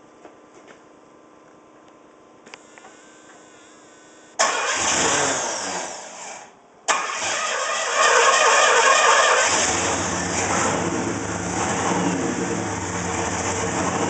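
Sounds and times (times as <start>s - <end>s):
engine rough idle: 7.2s - 14.0s.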